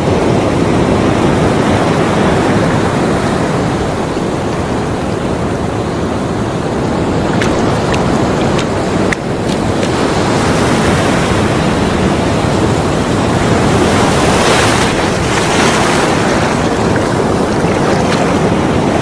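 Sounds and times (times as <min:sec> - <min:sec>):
ocean waves breaking: 0:00.0 - 0:19.0.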